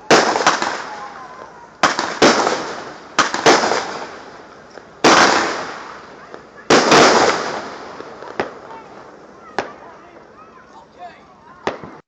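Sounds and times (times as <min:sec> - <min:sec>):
fireworks bangs: 0:00.0 - 0:10.5, 0:11.5 - 0:12.0.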